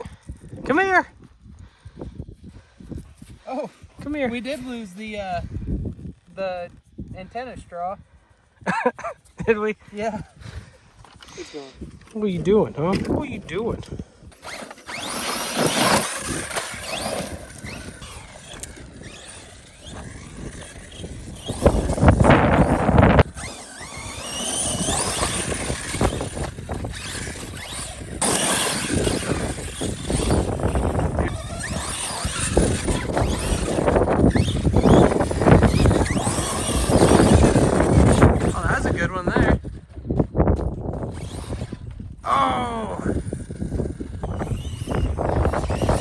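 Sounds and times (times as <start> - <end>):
electric motor whining: 11.9 - 46.0.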